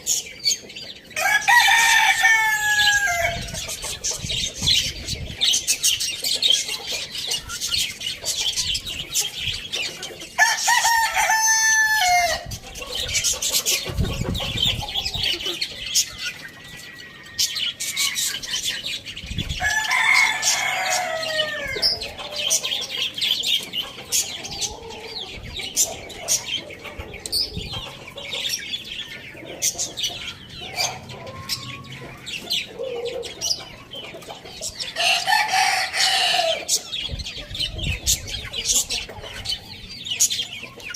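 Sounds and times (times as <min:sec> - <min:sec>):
chickens clucking: 0:00.0 - 0:40.9
rooster crowing: 0:01.2 - 0:03.5, 0:10.4 - 0:12.4, 0:19.6 - 0:22.1, 0:35.0 - 0:36.7.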